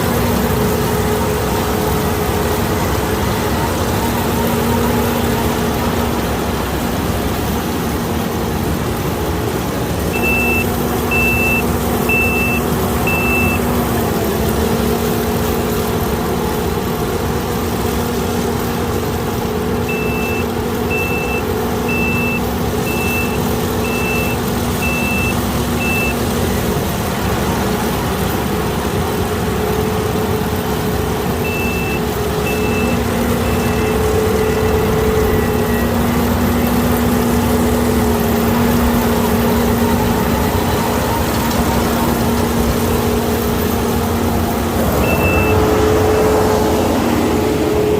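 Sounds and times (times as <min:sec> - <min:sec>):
combine harvester engine humming: 0:00.0 - 0:47.9
electronic warning beeps: 0:10.1 - 0:13.7, 0:19.8 - 0:26.3, 0:31.4 - 0:41.4, 0:45.0 - 0:45.9.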